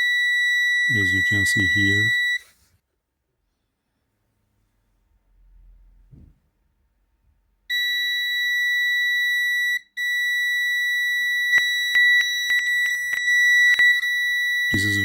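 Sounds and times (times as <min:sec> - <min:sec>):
multimeter continuity beep: 0:00.0 - 0:02.4, 0:07.7 - 0:15.0.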